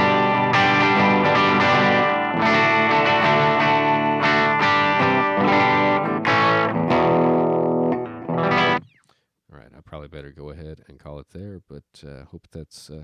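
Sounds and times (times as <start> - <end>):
electric guitar strummed chords: 0.0 - 8.9.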